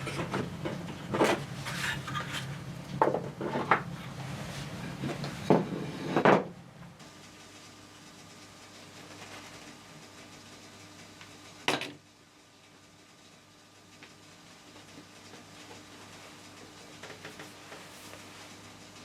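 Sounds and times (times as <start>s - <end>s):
steady low hum: 0.0s - 19.0s
hard objects knocking and clattering: 5.1s - 6.6s.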